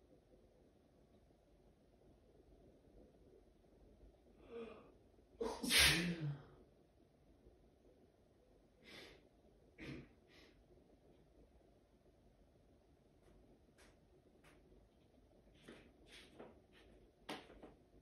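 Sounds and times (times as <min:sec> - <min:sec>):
person sneezing: 0:05.4 - 0:06.4.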